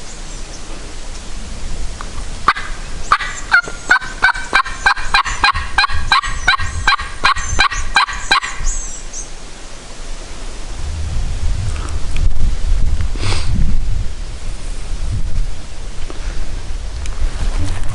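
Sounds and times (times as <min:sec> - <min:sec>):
turkey yelps: 0:02.5 - 0:08.9.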